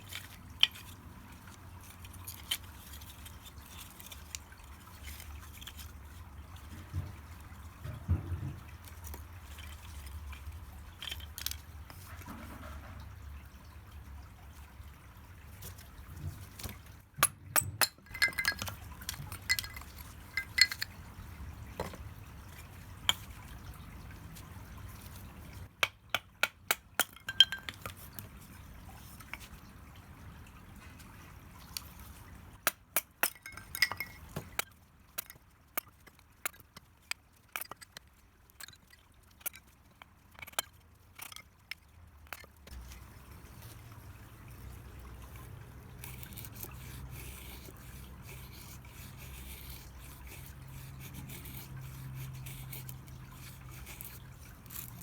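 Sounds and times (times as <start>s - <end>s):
charcoal lumps clinking together: 16.6s - 21.0s.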